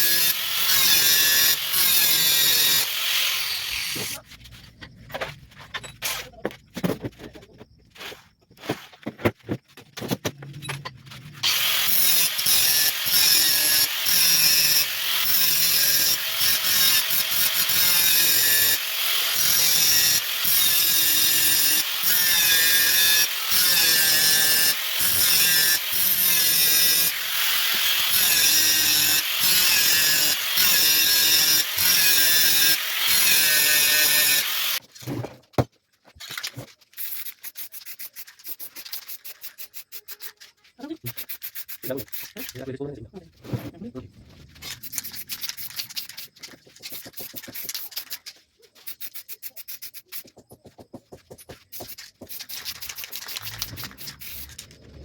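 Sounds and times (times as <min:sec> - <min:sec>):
wood rasping back and forth: 0:00.0 - 0:04.6, 0:11.3 - 0:34.8.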